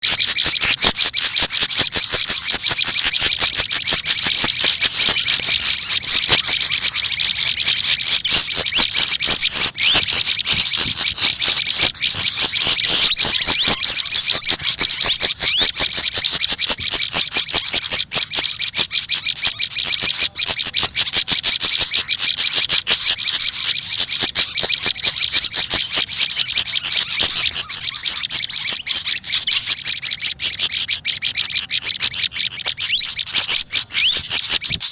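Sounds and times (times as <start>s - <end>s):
songbirds chirping and trilling: 0.0s - 34.9s.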